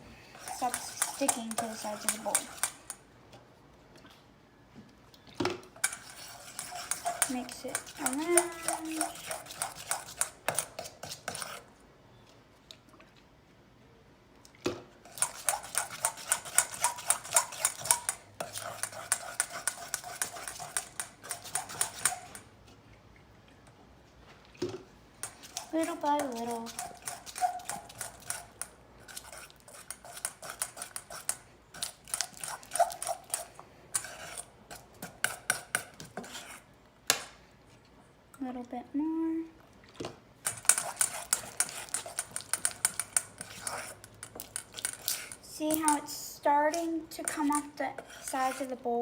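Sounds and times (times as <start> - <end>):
spoon scraping a bowl: 0.3 - 3.0, 5.8 - 11.7, 15.1 - 22.5, 25.2 - 36.7, 40.4 - 49.0.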